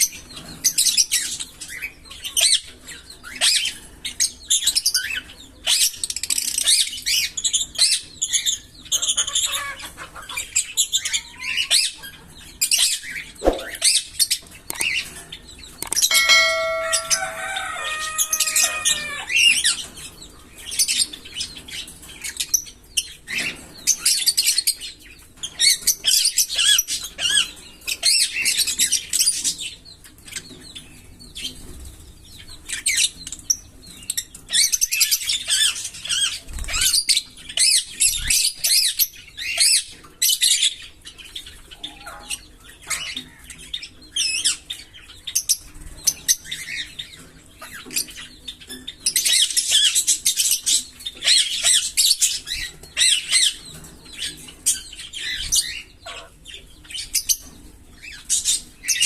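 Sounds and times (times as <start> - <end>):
lovebirds chirping: 4.5 - 20.1.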